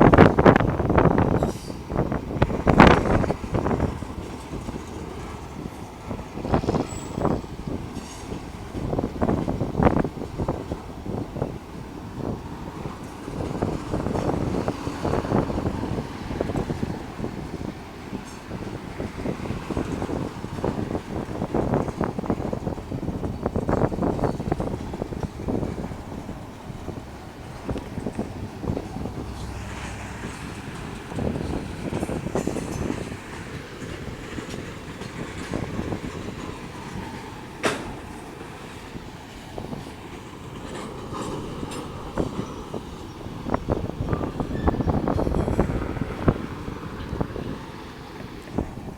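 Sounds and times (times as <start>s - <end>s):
rail joint clacks: 0.0s - 48.9s
train wheels rumbling on track: 0.0s - 48.9s
wind buffeting microphone: 0.0s - 48.9s
low rumble: 27.7s - 31.9s.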